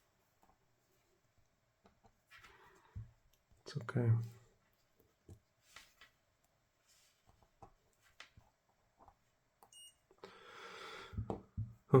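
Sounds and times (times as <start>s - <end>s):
multimeter beep: 9.7s - 10.0s.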